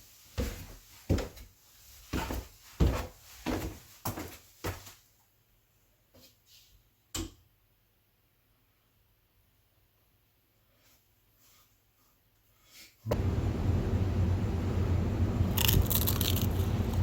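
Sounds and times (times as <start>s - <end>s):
footsteps across a floor: 0.0s - 5.0s.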